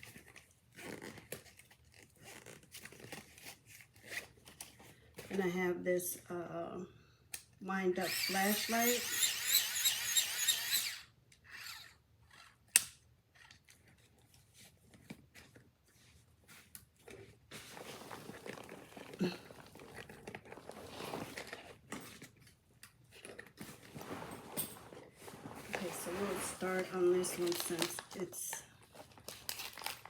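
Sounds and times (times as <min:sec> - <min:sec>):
hand crank whirring: 0:08.0 - 0:12.8
bag rustling and crinkling: 0:17.0 - 0:22.4, 0:23.2 - 0:30.0.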